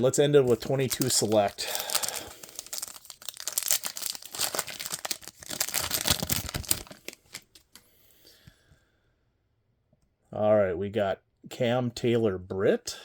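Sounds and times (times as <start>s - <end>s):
plastic wrapper crinkling and tearing: 0.4s - 7.8s.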